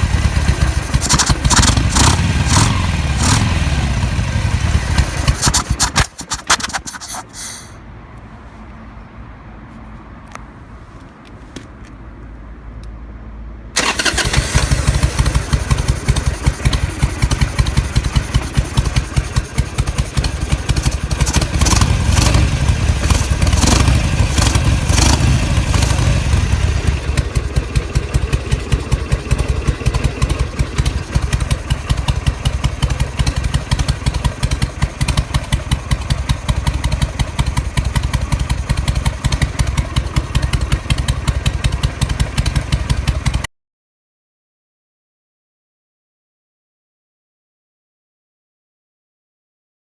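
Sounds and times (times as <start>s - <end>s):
motorcycle engine running: 0.0s - 7.2s, 13.8s - 43.5s.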